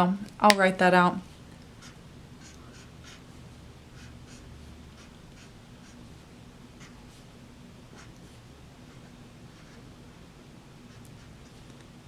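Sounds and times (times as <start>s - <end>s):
faint steady hum: 0.0s - 12.0s
pen scratching on paper: 1.8s - 3.4s, 4.0s - 6.0s, 6.8s - 7.3s, 7.9s - 9.9s.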